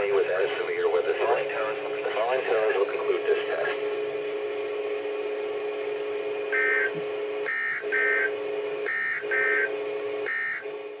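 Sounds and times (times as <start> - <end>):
buzzy digital bursts: 6.5 - 6.9, 8.9 - 9.7.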